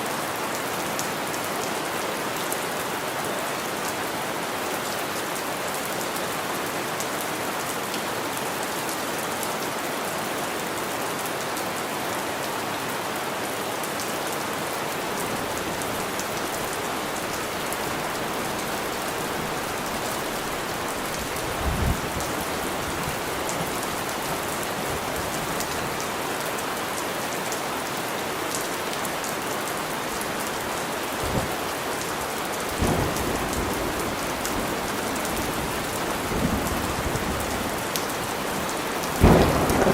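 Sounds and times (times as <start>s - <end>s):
heavy rain falling: 0.0s - 39.9s
low rumbles of thunder: 39.2s - 39.9s.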